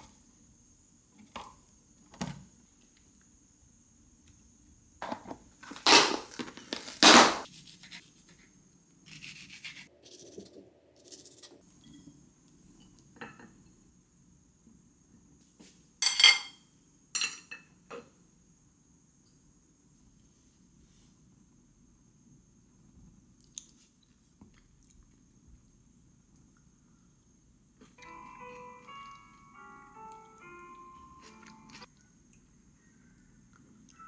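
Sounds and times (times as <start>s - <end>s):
dishes and utensils clinking: 16.0s - 16.6s, 17.2s - 17.7s.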